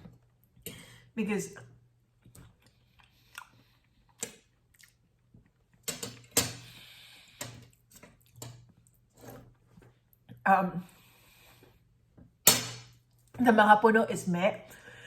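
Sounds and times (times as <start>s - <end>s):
person chewing cake: 2.2s - 5.8s.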